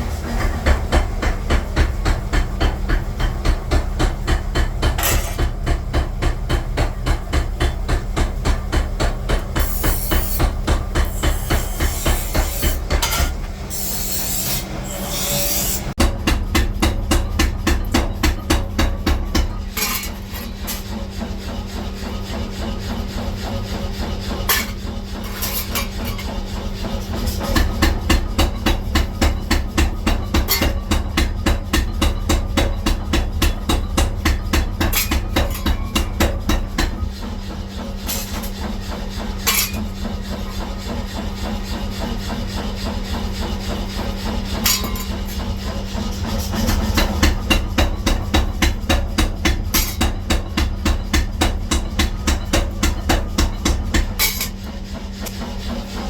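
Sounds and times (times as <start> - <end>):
low machine hum: 0.0 - 56.0.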